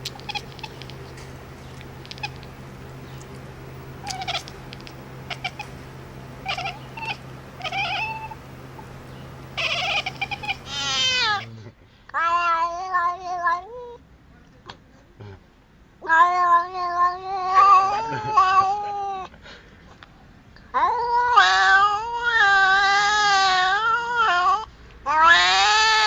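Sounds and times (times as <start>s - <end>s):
pet animal calling and yowling: 0.0s - 11.5s
steady hum: 0.0s - 11.6s.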